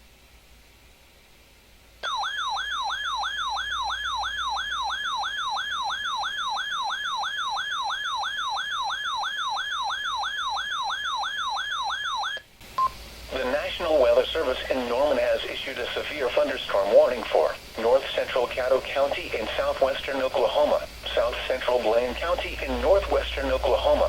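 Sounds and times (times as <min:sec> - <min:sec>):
warbling electronic siren: 0:02.0 - 0:12.4.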